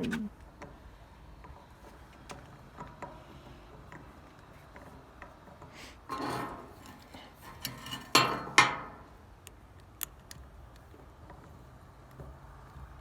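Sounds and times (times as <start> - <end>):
metal tools clinking and knocking: 6.1 - 9.2.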